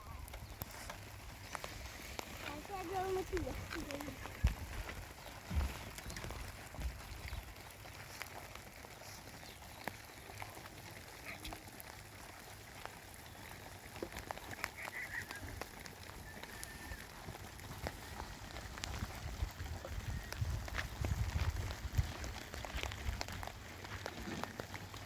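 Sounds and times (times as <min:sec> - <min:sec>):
short animal calls: 0:14.5 - 0:17.2.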